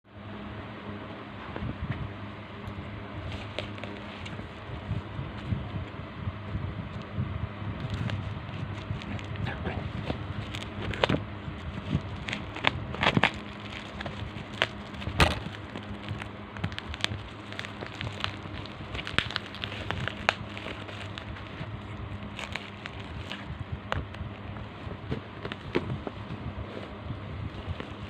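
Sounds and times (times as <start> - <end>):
steady low hum: 0.0 - 28.0
packaging crackling and clicking: 3.4 - 4.4, 7.8 - 24.5, 25.4 - 26.0.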